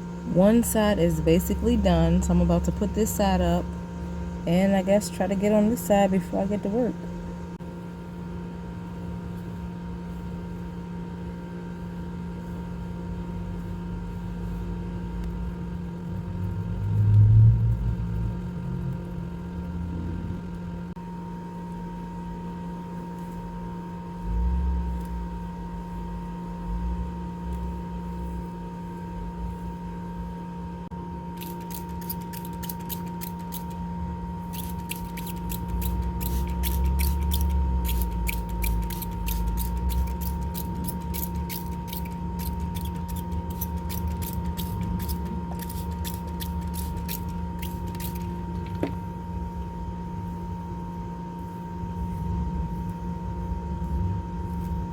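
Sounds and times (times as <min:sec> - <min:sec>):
steady hum: 0:00.0 - 0:54.9
crackles of hair being detangled: 0:31.4 - 0:33.8, 0:34.5 - 0:48.9.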